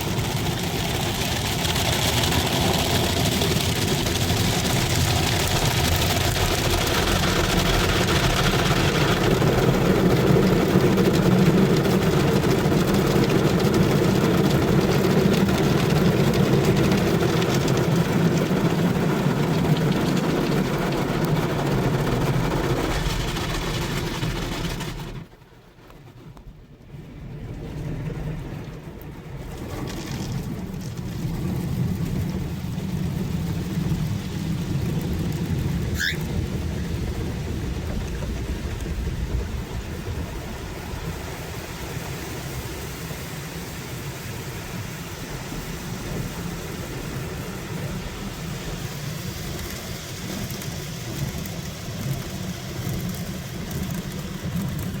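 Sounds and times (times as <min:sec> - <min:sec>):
water spraying on car: 0:00.0 - 0:25.6, 0:29.2 - 0:55.0
car wash machinery rumble: 0:00.0 - 0:26.2, 0:29.2 - 0:55.0
short rising whistle: 0:36.0 - 0:36.3.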